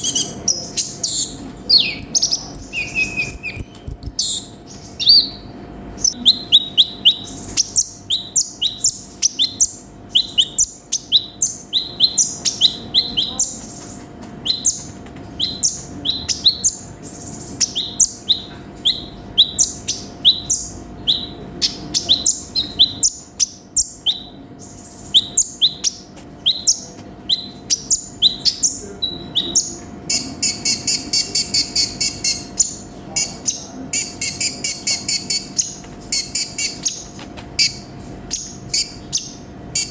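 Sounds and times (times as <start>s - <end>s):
sunbird singing sharp chirps: 0.0s - 13.6s, 37.6s - 39.9s.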